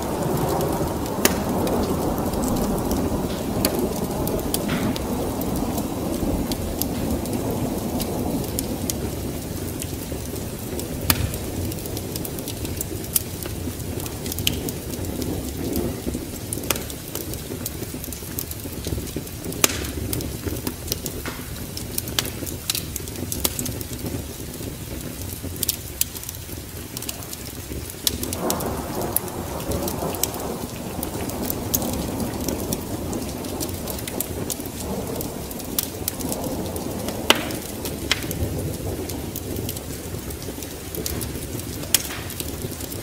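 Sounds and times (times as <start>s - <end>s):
thunder: 0.0s - 25.6s, 26.9s - 43.0s
rainstorm rumble: 0.0s - 43.0s
wood fire crackling and popping: 0.0s - 43.0s.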